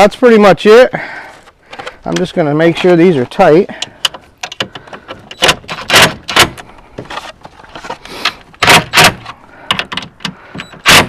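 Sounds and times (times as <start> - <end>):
hand tools clicking on bolts: 3.3 - 6.6, 8.1 - 11.0.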